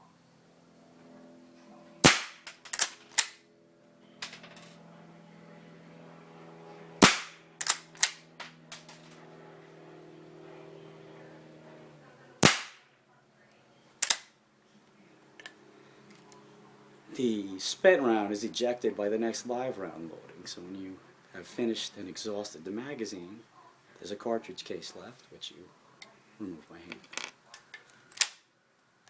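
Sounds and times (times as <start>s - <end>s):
rifle shots: 2.0s - 3.4s, 7.0s - 8.9s, 12.4s - 12.8s
rifle action clicking: 2.1s - 3.4s, 7.0s - 8.2s, 14.0s - 14.3s.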